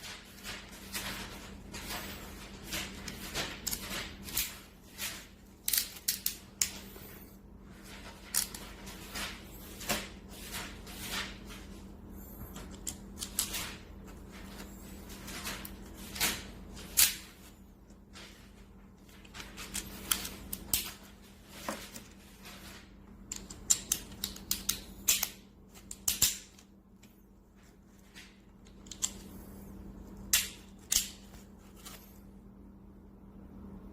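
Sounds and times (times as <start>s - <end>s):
steady low hum: 0.0s - 33.9s.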